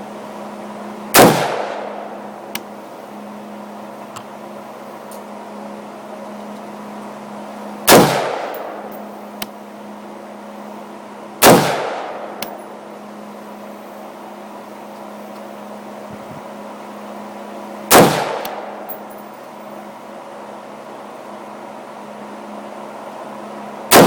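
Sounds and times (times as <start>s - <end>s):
rifle shots echoing: 1.2s - 2.1s, 7.9s - 9.1s, 11.4s - 12.6s, 17.9s - 18.9s.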